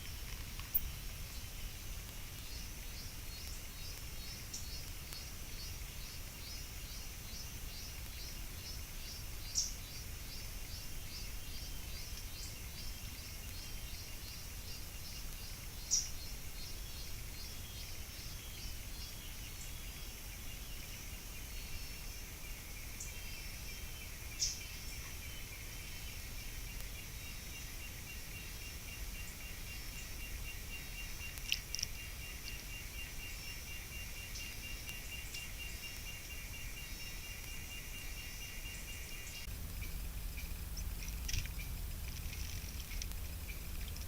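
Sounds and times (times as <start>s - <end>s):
bird chirps: 0.0s - 44.0s
insects chorus pulsing: 0.0s - 44.0s
low rumble: 39.4s - 44.0s.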